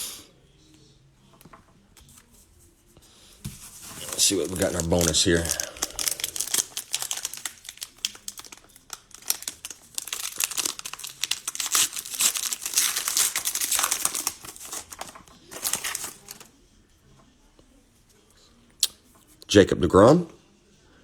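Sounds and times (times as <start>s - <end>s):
cellophane wrapper crinkling: 3.6s - 16.5s.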